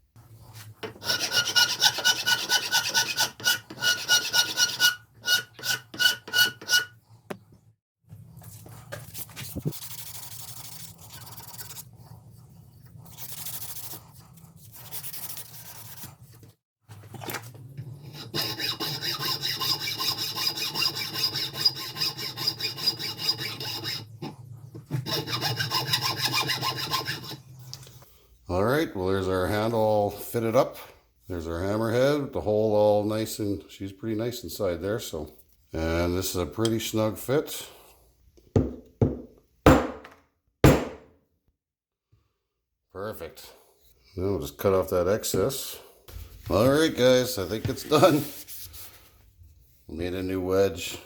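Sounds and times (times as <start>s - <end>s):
file rasping on wood: 0.8s - 7.0s, 18.0s - 24.3s, 24.9s - 27.4s.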